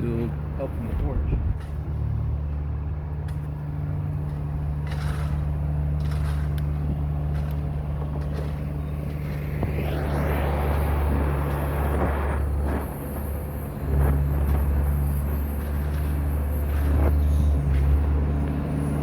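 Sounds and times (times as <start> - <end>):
low engine drone: 0.0 - 19.0
torch flame hissing: 8.6 - 15.6.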